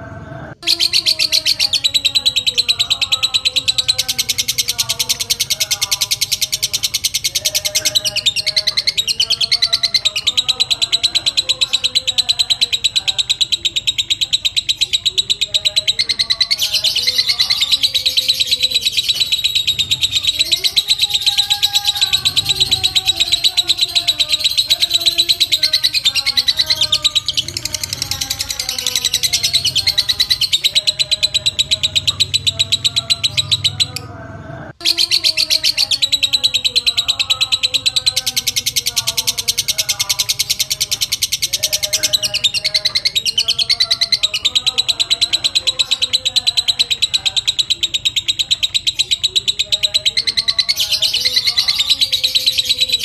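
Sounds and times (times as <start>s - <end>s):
lovebird rapid rattling chatter: 0.6s - 34.0s, 34.8s - 53.0s.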